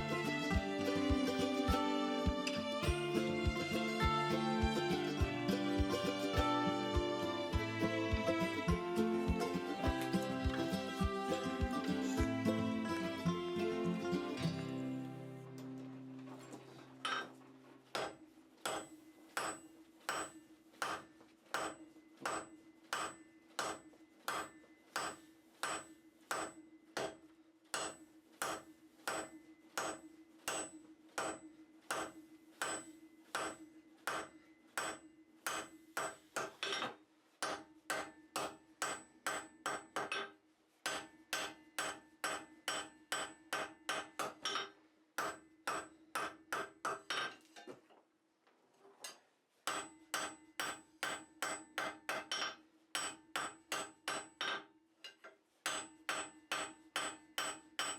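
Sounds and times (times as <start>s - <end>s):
hammer striking steel on anvil: 17.0s - 47.4s, 49.6s - 54.7s, 55.6s - 57.9s
anvil ringing: 18.0s - 27.2s, 27.8s - 36.9s.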